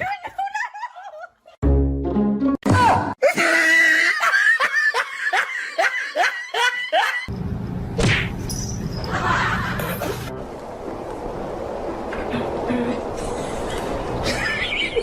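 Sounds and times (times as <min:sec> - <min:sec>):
person laughing hard: 0:03.2 - 0:07.3
steady low rumble: 0:10.3 - 0:14.6.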